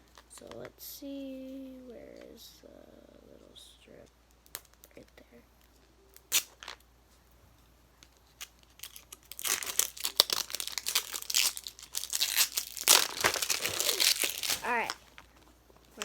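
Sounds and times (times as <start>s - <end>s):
plastic wrap crinkling and tearing: 6.2s - 6.8s, 8.1s - 16.0s.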